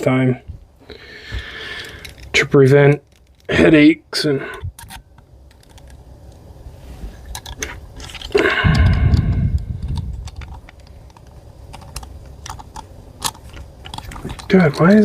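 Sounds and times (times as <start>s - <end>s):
small metal parts clinking: 1.8s - 3.5s, 7.3s - 9.0s
humming sound: 8.0s - 10.8s.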